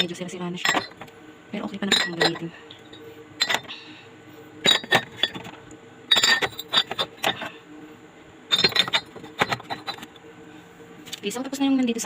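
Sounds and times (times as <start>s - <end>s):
bottles clinking in a fridge: 0.5s - 1.1s, 1.7s - 3.7s, 4.6s - 7.5s, 8.5s - 10.1s.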